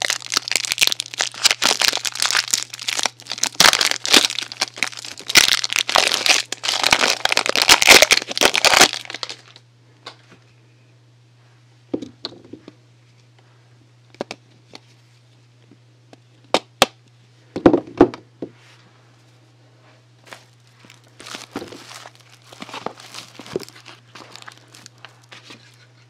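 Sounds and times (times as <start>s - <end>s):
wrapping crinkling and tearing: 0.0s - 9.6s, 20.3s - 25.8s.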